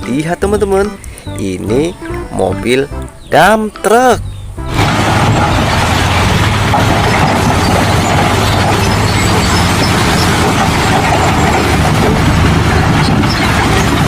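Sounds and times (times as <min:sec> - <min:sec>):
engine running with low hum: 0:04.2 - 0:14.0.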